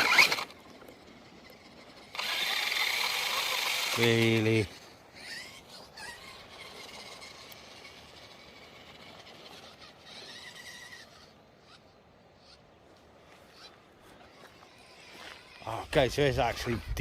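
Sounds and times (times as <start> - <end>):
electric motor whining: 0.0 - 12.0.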